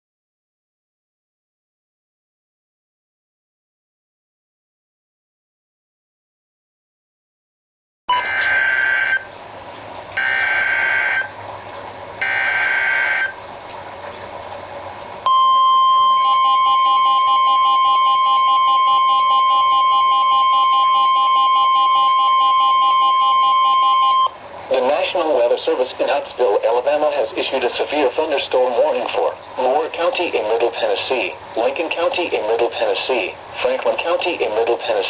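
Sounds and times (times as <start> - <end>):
steady warning alert tone: 8.1 - 9.3, 10.2 - 11.4, 12.2 - 13.4, 15.3 - 25.0
faint pulsing beep: 15.3 - 24.4
radio hiss: 24.7 - 35.0.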